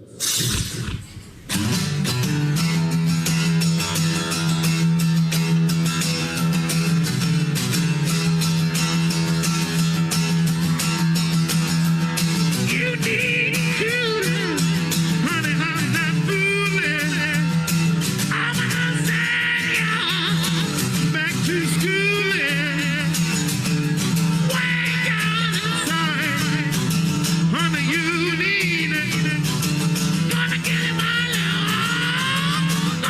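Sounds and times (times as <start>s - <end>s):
beatboxed percussive beats: 0.0s - 5.4s
mouth-imitated lead guitar lines: 0.0s - 33.0s.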